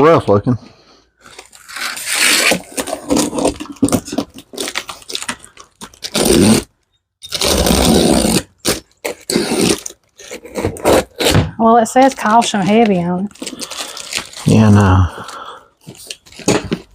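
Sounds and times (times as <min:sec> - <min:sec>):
cardboard box scraping: 0:01.4 - 0:05.2, 0:07.3 - 0:11.4.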